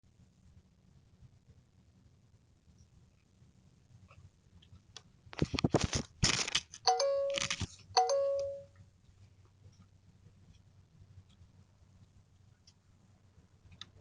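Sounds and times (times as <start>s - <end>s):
doorbell chime: 6.9s - 8.7s.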